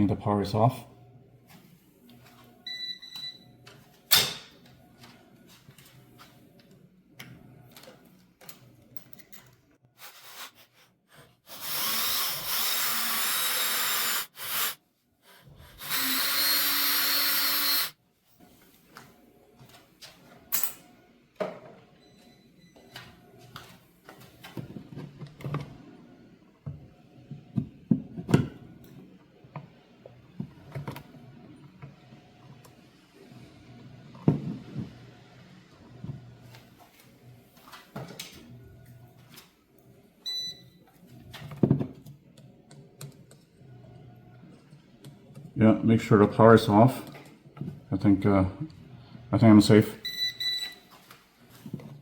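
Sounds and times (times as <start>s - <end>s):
power drill running: 11.5s - 14.8s, 15.6s - 18.0s.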